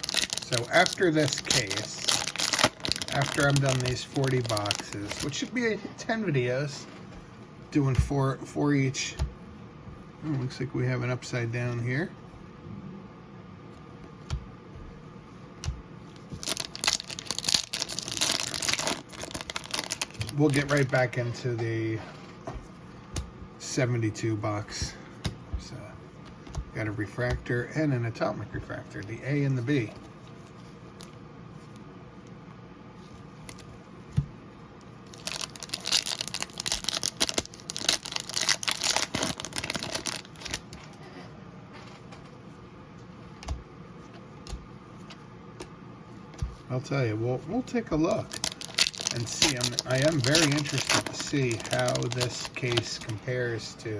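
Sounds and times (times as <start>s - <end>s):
wrapper crinkling and tearing: 0.0s - 5.5s, 16.2s - 21.1s, 35.0s - 40.7s, 48.2s - 53.3s.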